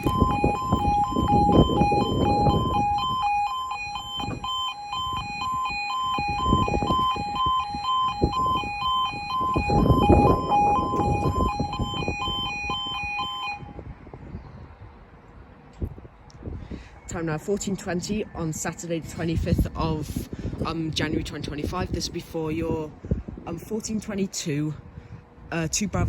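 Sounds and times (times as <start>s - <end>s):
level crossing two-tone alarm: 0.0s - 13.8s
gusty wind noise: 0.0s - 26.0s.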